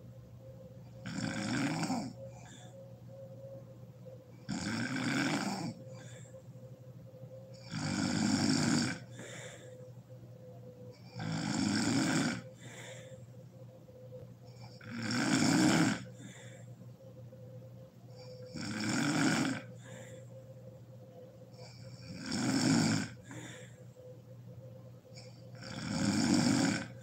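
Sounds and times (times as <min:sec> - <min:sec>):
woman snoring heavily: 0:01.0 - 0:02.8, 0:04.4 - 0:06.3, 0:07.5 - 0:09.8, 0:11.0 - 0:13.2, 0:14.5 - 0:16.7, 0:18.1 - 0:20.3, 0:21.5 - 0:23.9, 0:25.2 - 0:27.0
faint breath: 0:02.0 - 0:03.6, 0:05.4 - 0:07.7, 0:08.9 - 0:11.3, 0:12.3 - 0:14.8, 0:16.0 - 0:18.5, 0:19.6 - 0:22.1, 0:23.1 - 0:25.5.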